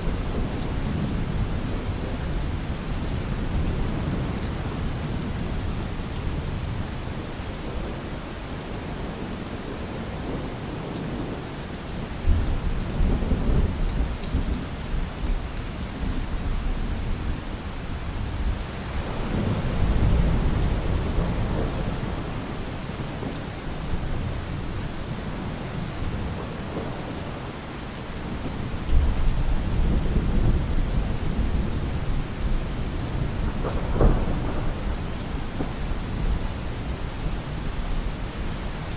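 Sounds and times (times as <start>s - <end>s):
deep thunder rumbles: 0.0s - 8.1s, 28.2s - 38.6s
steady rain falling: 0.0s - 38.9s.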